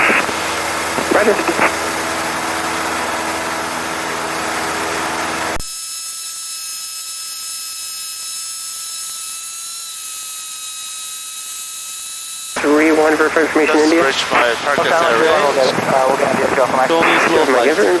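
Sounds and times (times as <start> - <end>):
airplane engine droning: 0.0 - 5.6, 12.6 - 18.0
high electrical whine and hiss: 0.0 - 18.0.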